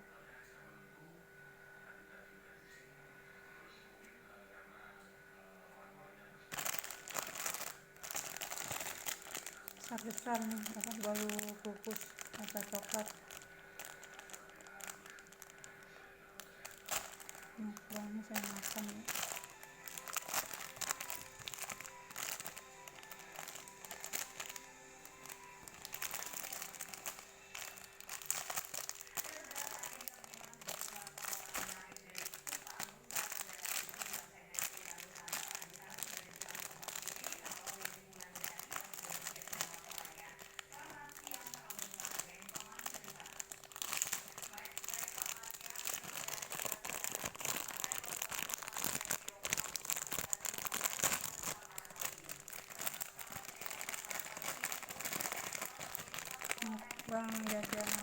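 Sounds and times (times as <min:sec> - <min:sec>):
chewing soft cake: 0:06.5 - 0:17.6
food wrapper crinkling: 0:06.5 - 0:58.0.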